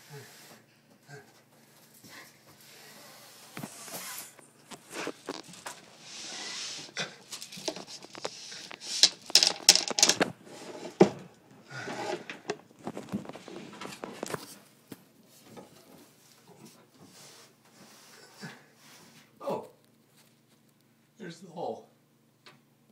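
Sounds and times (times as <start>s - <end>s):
knocking and scraping: 3.6s - 14.6s.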